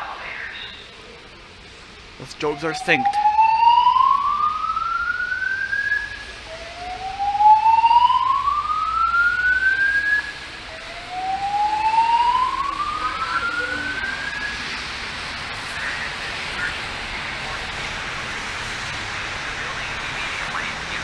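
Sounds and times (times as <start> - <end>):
fire alarm whoop tone: 2.4 - 14.9.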